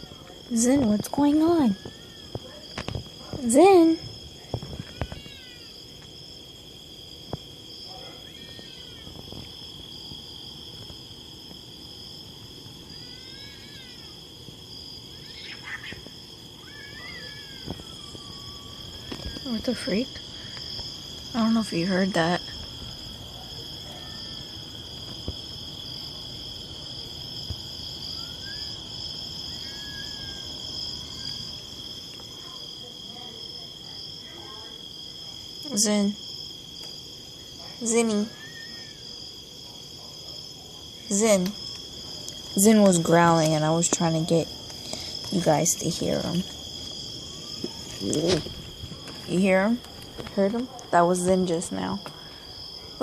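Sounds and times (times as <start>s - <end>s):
crickets chirring: 0.0s - 53.0s
night insects chorus: 0.0s - 53.0s
faint wavering cries: 8.0s - 9.2s, 15.0s - 20.6s, 28.1s - 31.6s, 38.2s - 39.2s.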